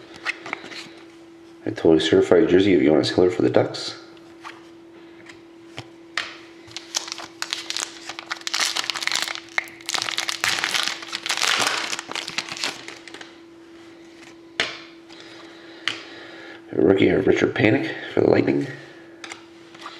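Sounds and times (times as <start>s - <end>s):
plastic wrapper crinkling: 6.7s - 13.3s.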